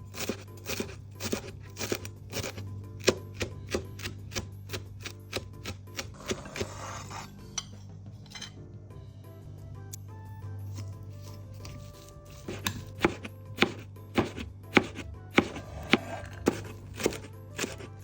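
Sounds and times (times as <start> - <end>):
background music: 0.0 - 18.0
knife chopping on cutting board: 0.1 - 7.2, 10.7 - 18.0
knife blade scraping board: 6.0 - 7.6, 10.7 - 18.0.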